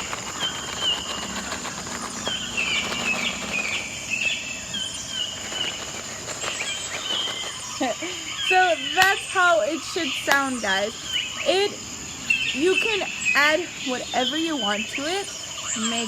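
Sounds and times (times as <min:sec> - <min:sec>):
rice and bean shaker rattling: 0:00.0 - 0:08.4
insect and bird chirping: 0:00.0 - 0:16.0.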